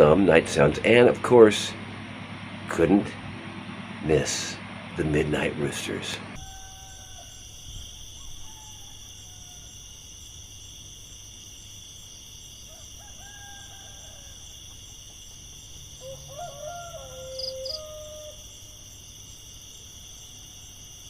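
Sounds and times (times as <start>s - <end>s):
high-pitched background drone: 0.0s - 7.4s
roosters crowing: 6.2s - 10.0s, 12.5s - 15.0s, 15.8s - 18.9s.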